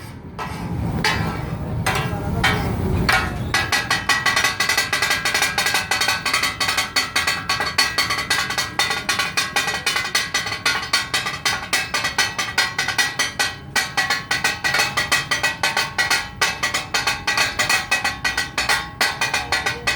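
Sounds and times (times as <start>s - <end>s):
metal spatulas clanging on griddle: 0.0s - 19.9s.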